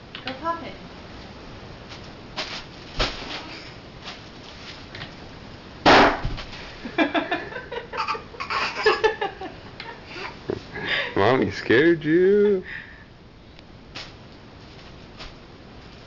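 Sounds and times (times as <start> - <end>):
bubble wrap popping: 1.9 - 5.1.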